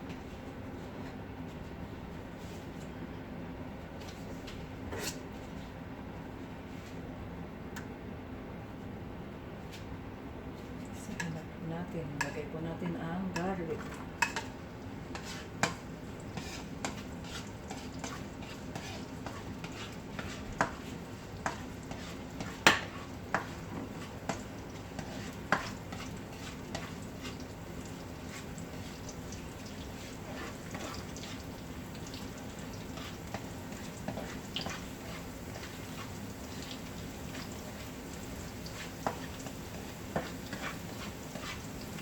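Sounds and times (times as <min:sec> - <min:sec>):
garlic sizzling in hot oil: 0:13.3 - 0:42.0.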